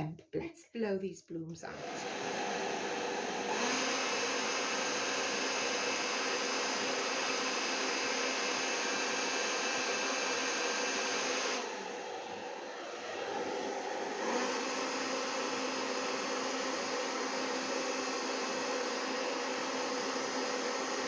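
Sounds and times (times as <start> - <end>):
hairdryer running: 1.7 - 21.0.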